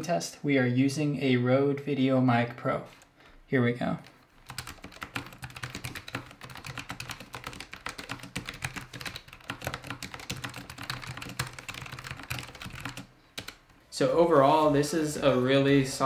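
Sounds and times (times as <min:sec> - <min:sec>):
mechanical keyboard typing: 0:04.4 - 0:13.6.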